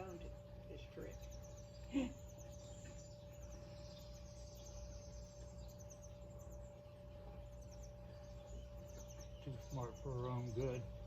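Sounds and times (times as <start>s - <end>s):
birds chirping: 0.0s - 11.0s
insects chirping: 0.0s - 11.0s
steady tonal hum: 0.0s - 11.0s.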